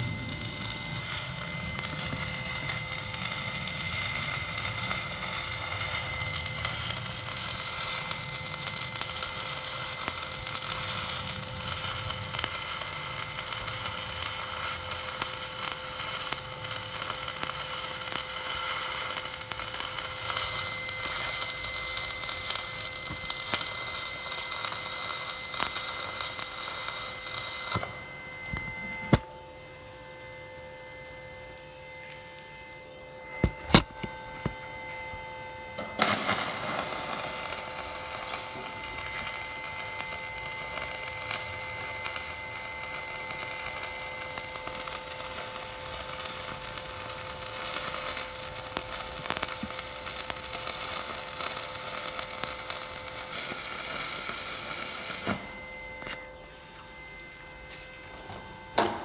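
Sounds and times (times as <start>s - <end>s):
welding arc crackling: 0.0s - 28.0s, 35.8s - 57.3s.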